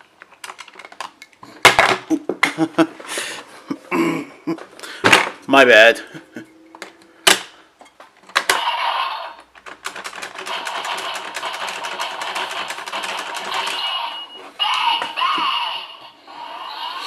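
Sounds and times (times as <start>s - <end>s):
electronic toy sound effects: 8.6s - 9.4s, 13.5s - 17.0s.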